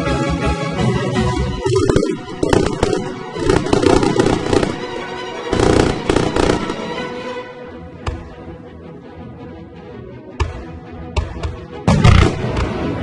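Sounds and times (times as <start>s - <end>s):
background music: 0.0s - 13.0s
firecrackers crackling: 1.7s - 7.2s, 12.1s - 12.7s.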